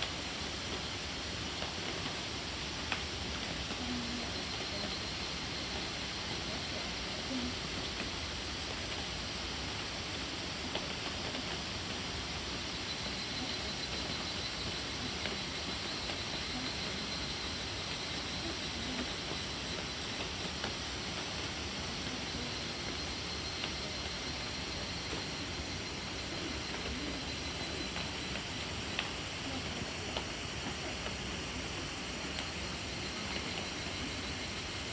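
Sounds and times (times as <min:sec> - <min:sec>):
steady rain on woodland: 0:00.0 - 0:34.9.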